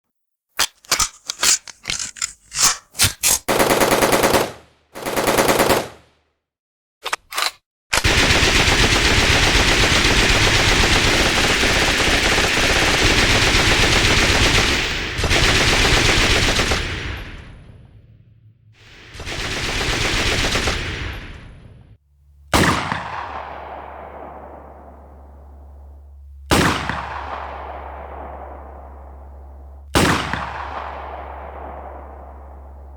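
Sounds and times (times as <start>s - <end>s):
automatic gunfire bursts: 2.5s - 6.0s, 8.0s - 16.9s, 19.1s - 21.2s
single gunshots: 22.5s - 25.5s, 26.5s - 29.1s, 29.9s - 32.8s.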